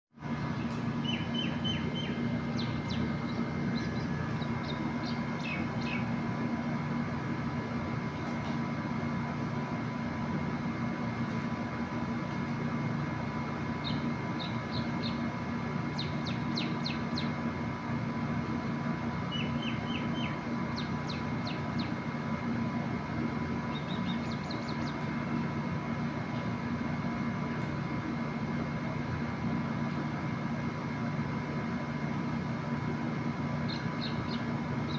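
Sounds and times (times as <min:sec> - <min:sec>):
steady mechanical hum: 0:00.1 - 0:34.9
small birds chirping: 0:00.5 - 0:06.2, 0:13.8 - 0:15.3, 0:15.9 - 0:17.4, 0:19.3 - 0:22.0, 0:23.7 - 0:25.1, 0:33.6 - 0:34.9.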